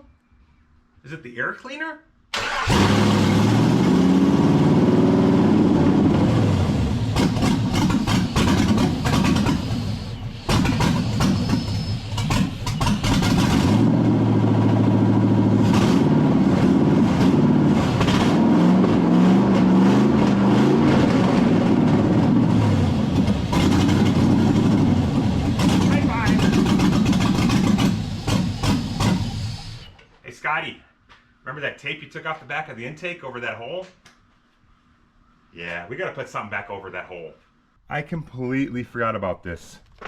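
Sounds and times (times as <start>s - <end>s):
engine revving unevenly: 2.4s - 30.0s.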